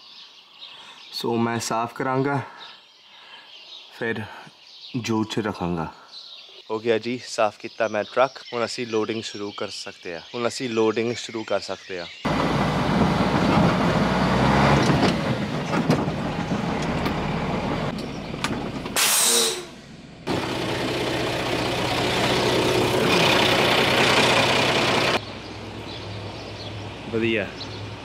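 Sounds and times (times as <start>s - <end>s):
heavy vehicle engine running: 12.3s - 27.1s
air brake hiss: 19.0s - 19.8s.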